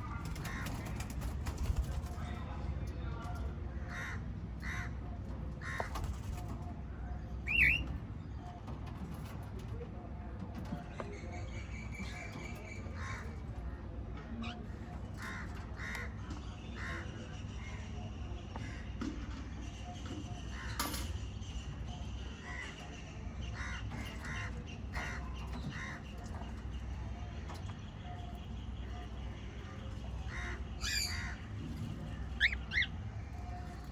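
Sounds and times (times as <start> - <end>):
birds chirping harshly: 0.0 - 33.9.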